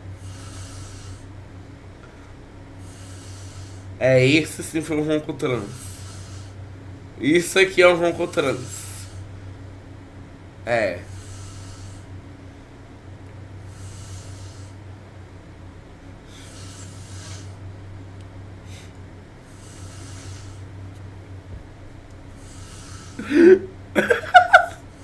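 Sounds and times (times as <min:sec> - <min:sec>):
woman breathing and snoring: 0:00.0 - 0:01.4, 0:02.0 - 0:04.0, 0:05.6 - 0:06.7, 0:11.0 - 0:12.2, 0:13.5 - 0:14.9, 0:16.1 - 0:17.7, 0:18.6 - 0:20.8, 0:22.3 - 0:23.6
low steady hum: 0:00.0 - 0:25.0.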